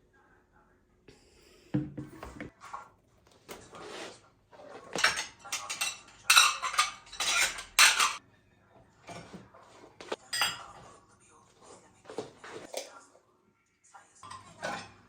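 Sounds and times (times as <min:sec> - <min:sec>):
cutlery and dishes clattering: 0:03.4 - 0:08.2, 0:09.0 - 0:10.9, 0:12.1 - 0:13.0, 0:14.2 - 0:15.0.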